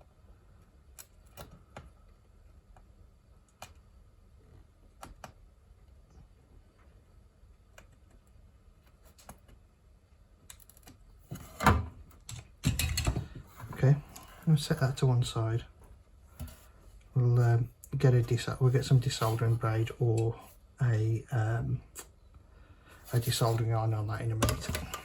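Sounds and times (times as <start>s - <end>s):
low room hum: 0.0s - 25.0s
faint clicks and taps: 4.5s - 7.0s.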